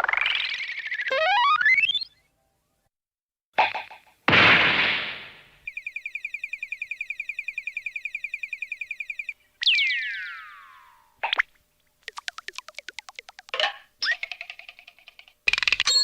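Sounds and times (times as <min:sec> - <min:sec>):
falling whistle-like glide: 0:09.6 - 0:11.1
high warbling trill: 0:09.6 - 0:11.2.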